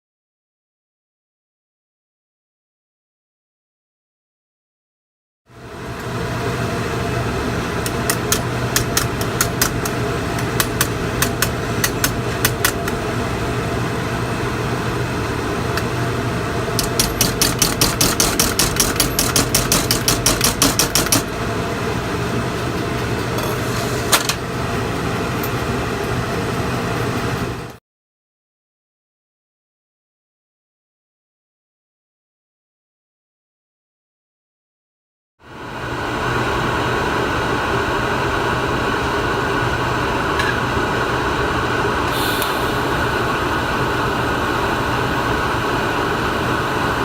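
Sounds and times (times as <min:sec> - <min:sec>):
welding machine hum and hiss: 0:05.6 - 0:27.8, 0:35.6 - 0:47.0.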